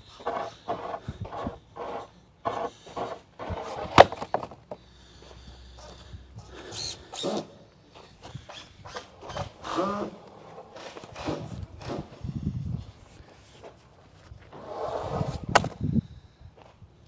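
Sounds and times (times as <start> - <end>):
lumber scuffs and knocks: 0.2 - 4.8.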